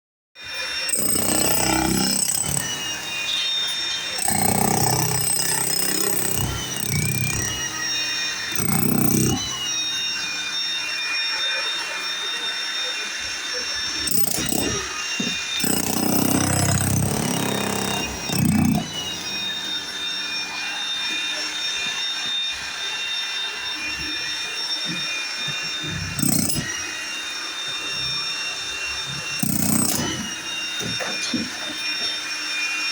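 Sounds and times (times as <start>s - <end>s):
jackhammer hammering: 0.9s - 10.6s, 14.0s - 20.3s, 26.1s - 26.9s, 29.4s - 30.4s.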